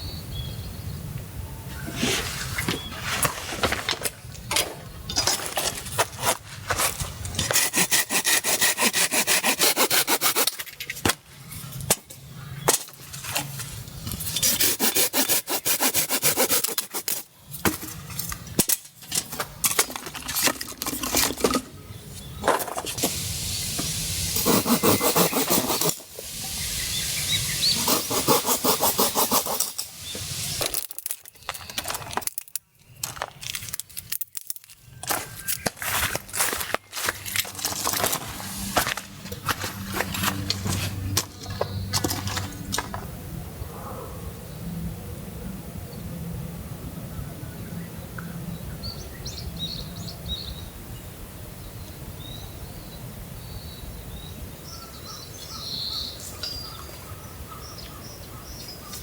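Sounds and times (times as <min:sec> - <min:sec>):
hand saw cutting wood: 0:07.4 - 0:10.6, 0:14.2 - 0:17.3, 0:24.3 - 0:26.2, 0:27.5 - 0:30.2.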